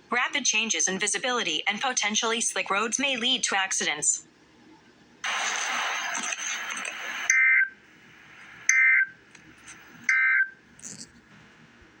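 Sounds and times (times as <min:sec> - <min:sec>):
loud hiss burst: 0:05.2 - 0:07.3.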